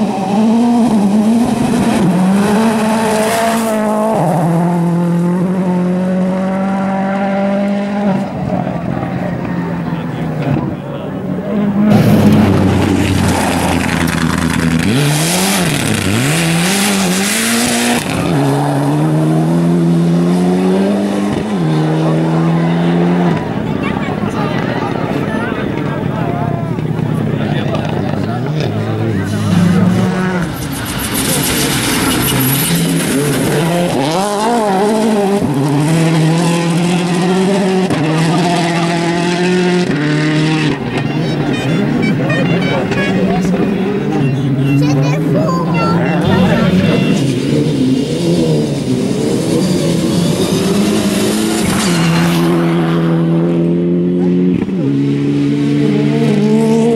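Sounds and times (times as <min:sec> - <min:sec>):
rally car engine revving: 0:00.0 - 0:56.9
tyres squealing and skidding: 0:28.6 - 0:34.2, 0:40.7 - 0:53.0.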